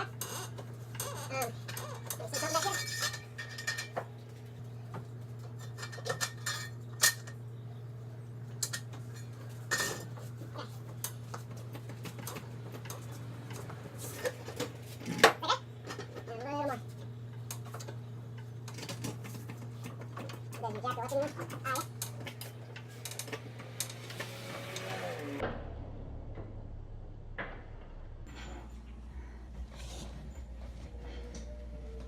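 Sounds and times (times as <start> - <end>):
electrical hum: 0.0 - 32.0
metal tools clinking: 0.9 - 4.0, 5.6 - 7.4.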